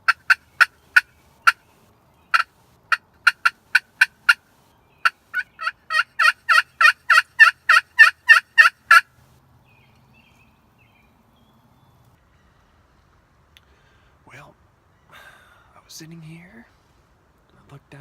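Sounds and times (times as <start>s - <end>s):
turkey yelping: 2.3s - 4.4s, 5.0s - 9.1s.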